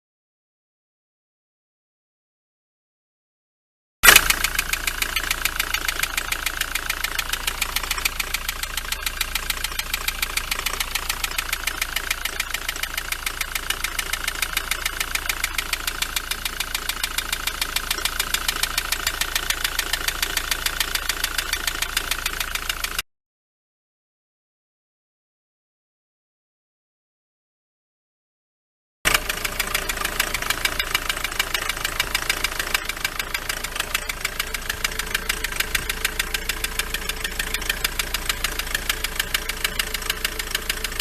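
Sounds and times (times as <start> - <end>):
diesel engine idling with knock: 4.0 - 23.0, 29.1 - 41.0.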